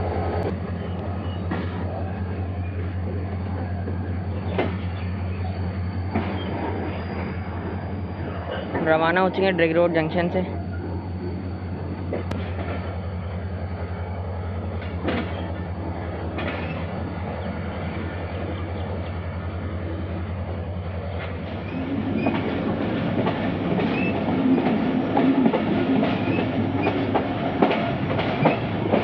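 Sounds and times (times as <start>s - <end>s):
train interior hum: 0.0s - 29.0s
train wheels clacking on rails: 2.8s - 5.1s, 6.0s - 7.7s, 14.8s - 17.0s, 21.2s - 29.0s.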